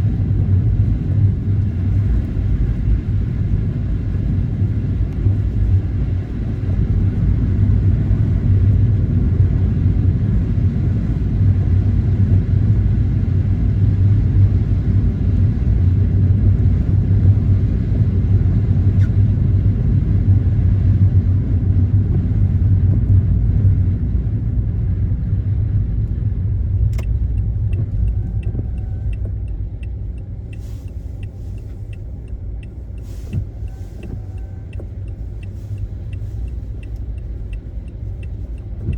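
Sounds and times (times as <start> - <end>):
car road and engine rumble: 0.0 - 38.9
turn signal ticking: 26.8 - 38.9.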